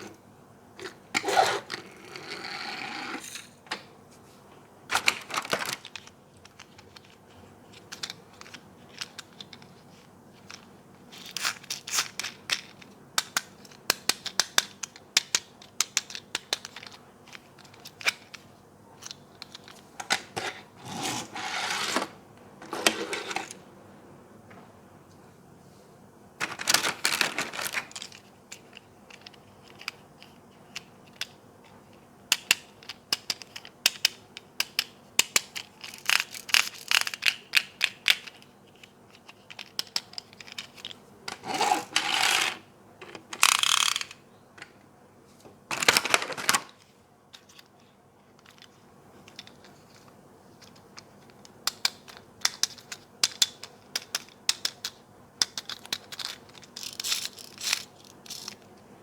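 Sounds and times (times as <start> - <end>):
packaging rustling and scraping: 19.6 - 23.6, 26.4 - 28.2, 40.3 - 42.6, 45.7 - 50.8.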